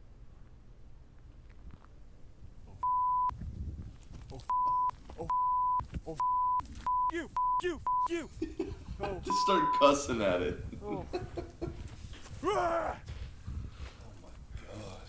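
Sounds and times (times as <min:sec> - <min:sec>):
censor bleeps: 0:02.8 - 0:03.3, 0:04.5 - 0:08.2, 0:09.3 - 0:10.1
person shouting: 0:12.4 - 0:13.1.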